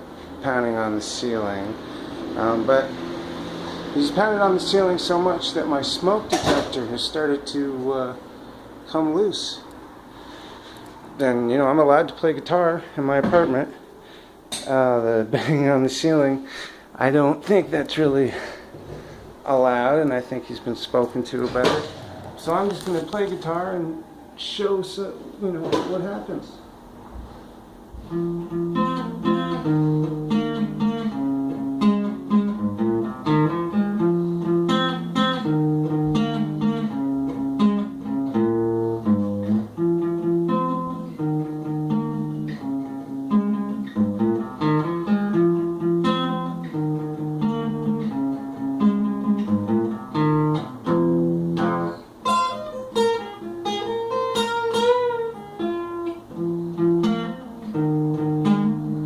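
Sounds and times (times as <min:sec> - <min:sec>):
guitar picked and strummed: 0:00.0 - 0:07.9, 0:20.7 - 0:23.8, 0:27.8 - 0:59.0
guitar melodic run with bent notes: 0:27.9 - 0:59.0.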